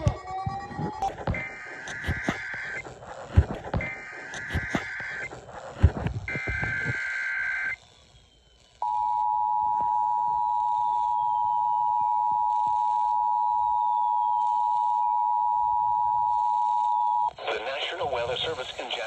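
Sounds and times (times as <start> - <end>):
steady single-pitch alert tone: 0.0 - 2.8, 3.4 - 5.3
buzzy digital data burst: 0.0 - 7.2.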